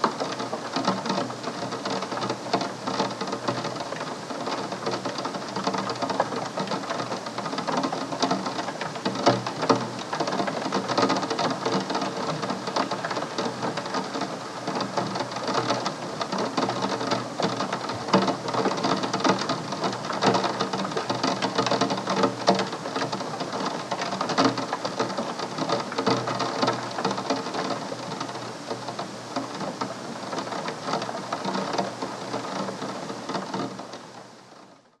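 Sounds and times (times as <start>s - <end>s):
rain pattering on window glass: 0.0s - 35.0s.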